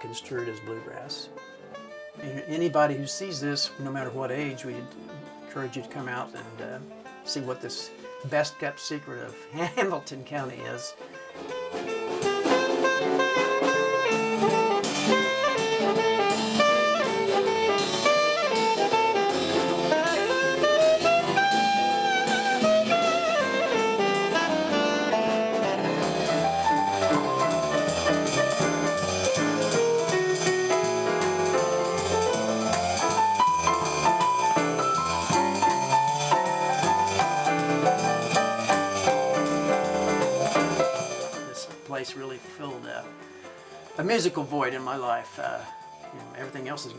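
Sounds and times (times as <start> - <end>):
saxophone melody: 1.3 - 3.2, 10.6 - 41.9
drum kit: 9.5 - 46.9
bass line: 12.3 - 41.6.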